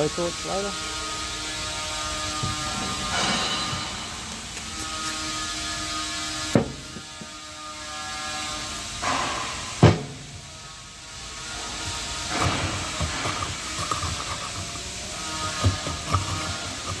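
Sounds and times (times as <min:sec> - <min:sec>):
steady background hum: 0:00.0 - 0:17.0
sharp knocks on hive box: 0:09.1 - 0:10.2.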